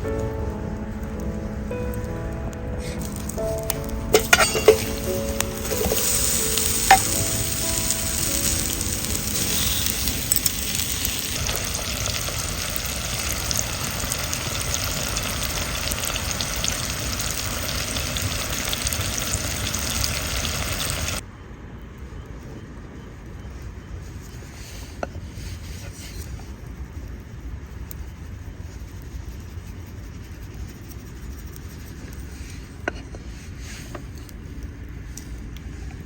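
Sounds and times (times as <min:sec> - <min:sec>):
campfire crackling: 0:00.0 - 0:21.2, 0:33.7 - 0:36.0
food sizzling in a frying pan: 0:02.8 - 0:21.2.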